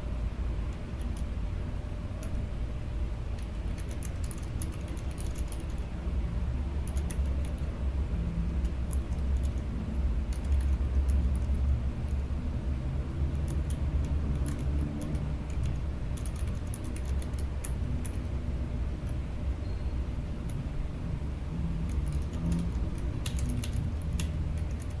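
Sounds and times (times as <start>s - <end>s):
steady low rumble: 0.0s - 25.0s.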